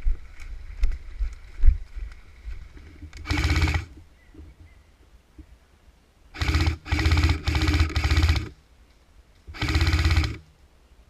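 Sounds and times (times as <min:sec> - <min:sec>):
airsoft gun bursts: 0:03.2 - 0:03.9, 0:06.3 - 0:08.6, 0:09.5 - 0:10.5.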